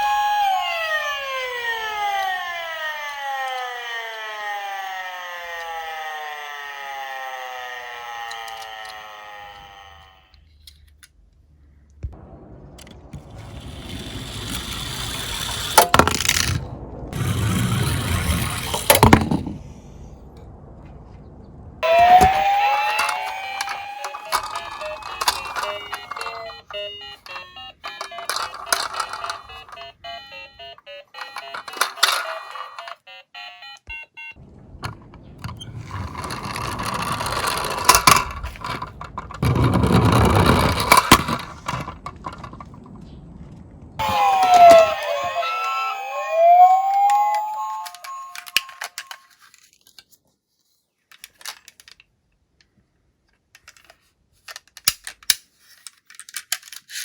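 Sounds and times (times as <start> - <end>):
toy police siren winding down: 0.0 - 10.4, 13.4 - 19.5, 21.8 - 42.6, 44.0 - 49.3
toy car rolling on slope: 0.0 - 11.0, 12.8 - 19.6, 21.8 - 33.0, 34.8 - 43.0, 44.0 - 50.0, 53.6 - 57.0
electronic toy tones and beeps: 21.8 - 34.4, 44.0 - 49.3
sharp plastic clacks: 22.2 - 30.0, 31.2 - 33.0, 51.1 - 57.0.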